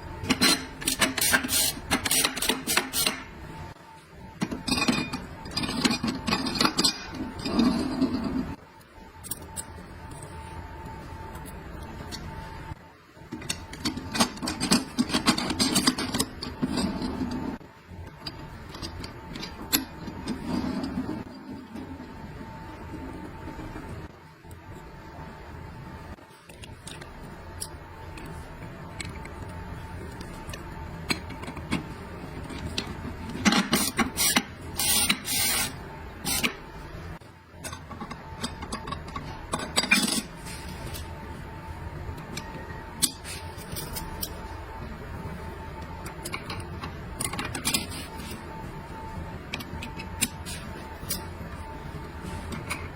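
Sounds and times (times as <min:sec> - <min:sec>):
faint steady hum: 0:00.0 - 0:52.9
parts clicking and rubbing: 0:00.2 - 0:03.3, 0:26.4 - 0:36.7, 0:45.7 - 0:52.9.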